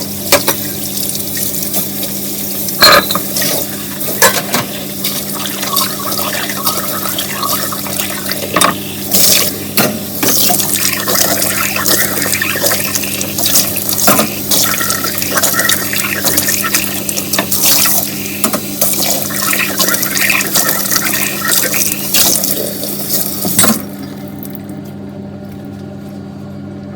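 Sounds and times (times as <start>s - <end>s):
steady low hum: 0.0s - 26.9s
dishes clinking: 2.8s - 3.6s.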